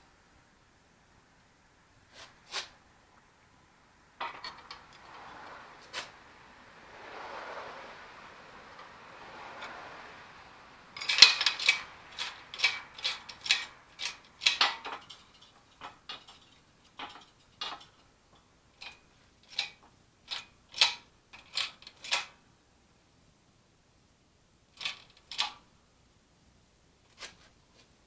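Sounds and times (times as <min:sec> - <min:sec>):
metallic clicks of hand tools: 0:11.0 - 0:18.0, 0:18.8 - 0:22.4.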